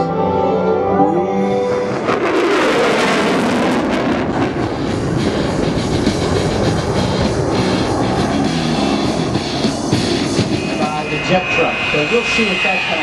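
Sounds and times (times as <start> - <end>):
jet engine roar: 1.3 - 13.0.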